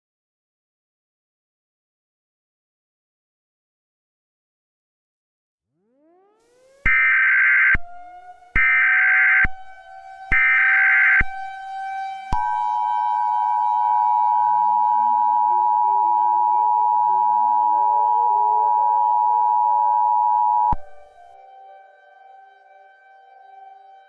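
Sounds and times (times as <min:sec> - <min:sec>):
rising siren: 0:05.7 - 0:24.0.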